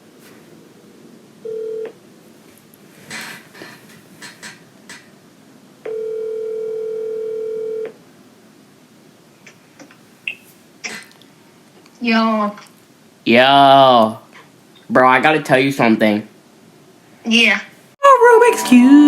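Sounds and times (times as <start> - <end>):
telephone ringback tone: 1.4 - 2.0, 5.9 - 7.9.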